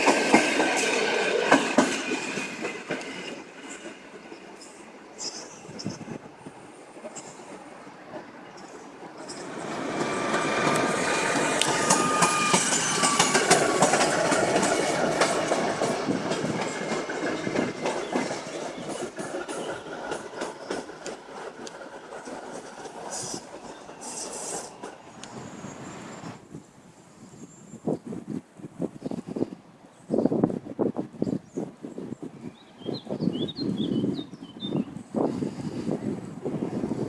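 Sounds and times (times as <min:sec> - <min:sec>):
train wheels clattering: 0:00.0 - 0:04.8, 0:08.1 - 0:26.4
train wheel squeal: 0:08.6 - 0:26.4.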